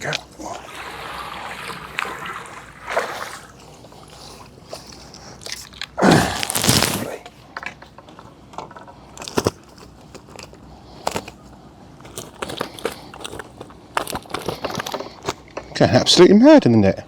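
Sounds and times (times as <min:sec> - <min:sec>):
water splash: 0:00.0 - 0:03.8
fish thrashing in a net: 0:00.0 - 0:04.4, 0:06.0 - 0:07.2
crackles and clicks: 0:04.7 - 0:11.4.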